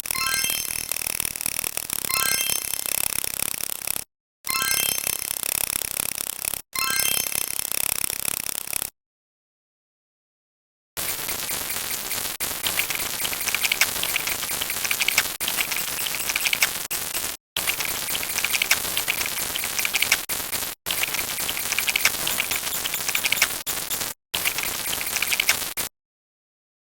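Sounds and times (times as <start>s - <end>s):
flickering crackle: 11.3s - 25.9s.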